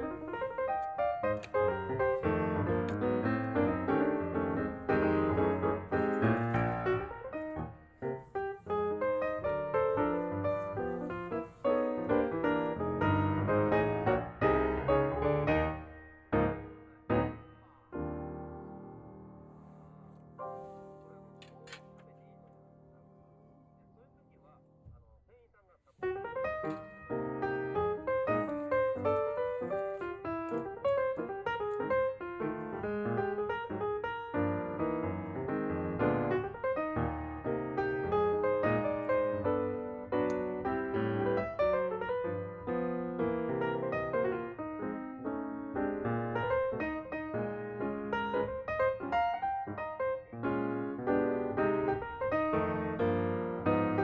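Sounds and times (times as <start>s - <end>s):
piano music: 0.0s - 24.9s, 26.0s - 54.0s.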